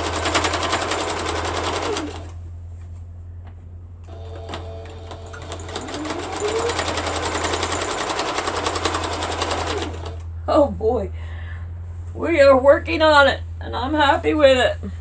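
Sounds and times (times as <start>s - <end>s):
sewing machine stitching: 0.0s - 2.4s, 4.1s - 10.2s.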